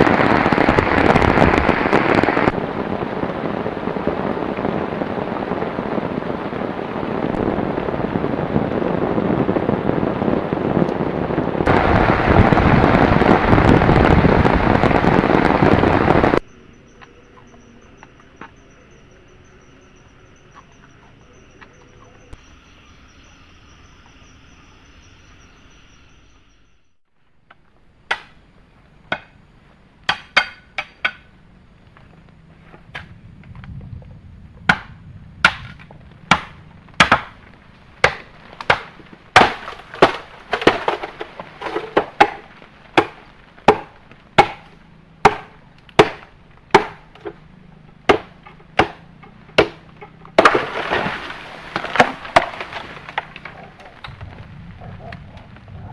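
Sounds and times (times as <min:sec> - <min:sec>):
faint insects buzzing: 0:00.0 - 0:55.9
chopping strikes on wood: 0:28.1 - 0:28.4, 0:30.1 - 0:31.2, 0:38.0 - 0:42.4, 0:43.0 - 0:47.4, 0:48.1 - 0:51.0.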